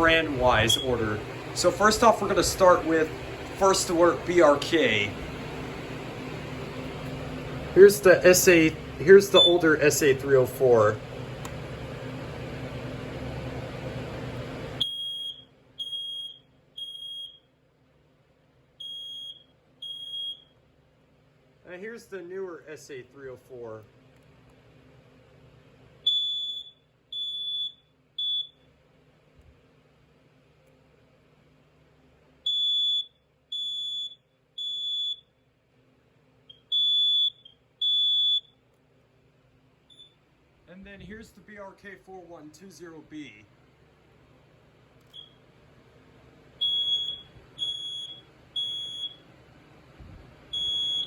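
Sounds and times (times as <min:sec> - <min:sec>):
smoke alarm high-pitched beeps: 0:00.6 - 0:01.0, 0:09.3 - 0:09.7, 0:14.8 - 0:17.5, 0:18.8 - 0:20.6, 0:26.0 - 0:28.7, 0:32.4 - 0:35.4, 0:36.5 - 0:38.6, 0:39.9 - 0:40.2, 0:45.1 - 0:45.4, 0:46.6 - 0:49.3, 0:50.5 - 0:51.0.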